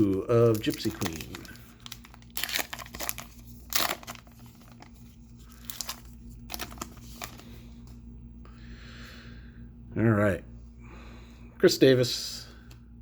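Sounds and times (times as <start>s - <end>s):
wrapper tearing and crinkling: 0.0s - 7.5s.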